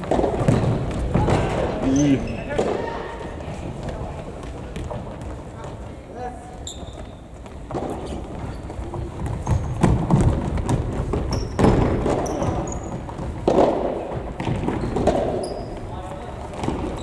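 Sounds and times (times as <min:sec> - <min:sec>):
shoes squeaking on gym floor: 0:00.0 - 0:03.8, 0:06.5 - 0:13.3, 0:14.4 - 0:17.0.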